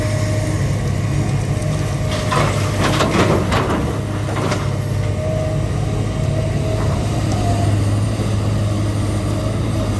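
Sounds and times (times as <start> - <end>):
excavator diesel engine running: 0.0 - 9.9
rock clanking and scraping on bucket: 1.7 - 5.2.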